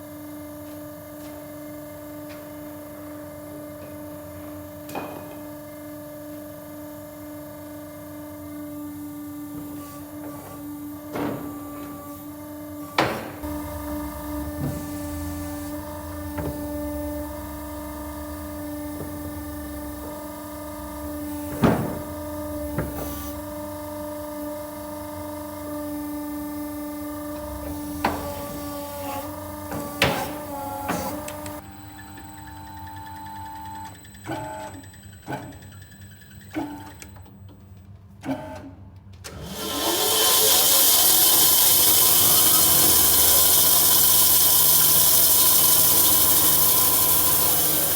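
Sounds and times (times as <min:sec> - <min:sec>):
steady motor hum: 0:00.0 - 0:35.8, 0:39.4 - 0:47.9
machinery clunks and knocks: 0:10.3 - 0:12.0, 0:12.9 - 0:23.7, 0:27.3 - 0:31.6
motor whine spinning up: 0:13.2 - 0:25.7.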